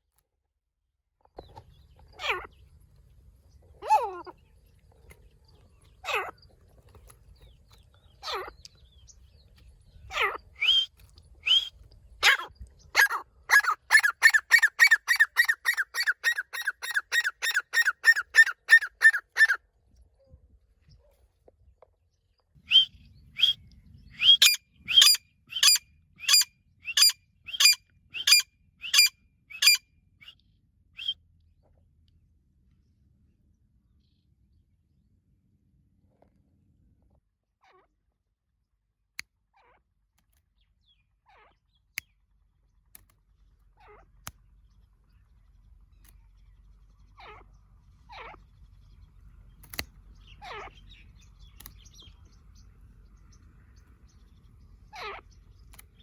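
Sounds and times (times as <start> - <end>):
francolin calling: 10.1 - 19.6, 22.7 - 30.4.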